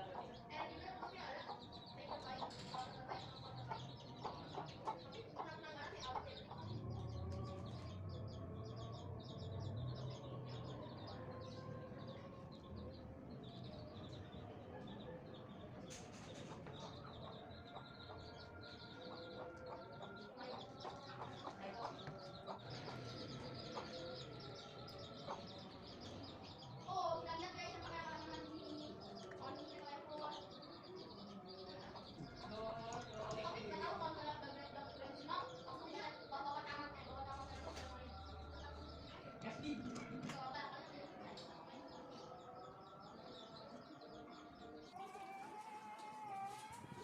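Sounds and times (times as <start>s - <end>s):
birds calling faintly: 0.0s - 47.0s.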